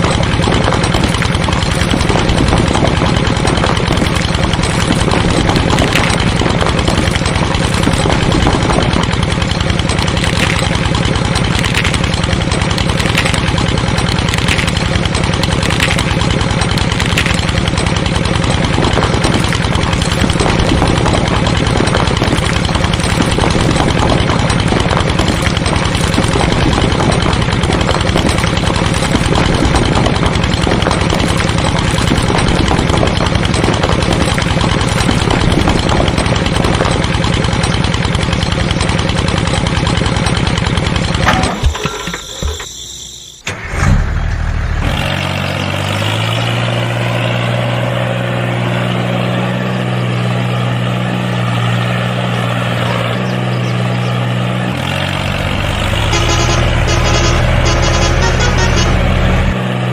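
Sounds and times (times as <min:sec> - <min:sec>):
small engine idling: 0:00.0 - 0:59.9
high-pitched squeak: 0:41.3 - 0:43.5, 0:56.0 - 0:59.5.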